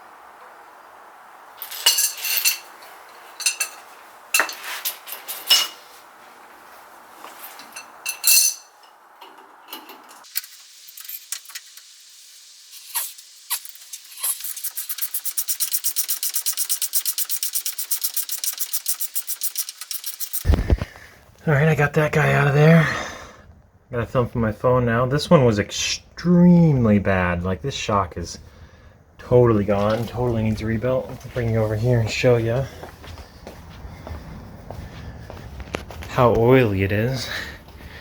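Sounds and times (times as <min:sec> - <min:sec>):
metallic clinks and knocks: 0:01.6 - 0:05.8, 0:07.5 - 0:10.3
ratchet clicking: 0:12.9 - 0:20.5.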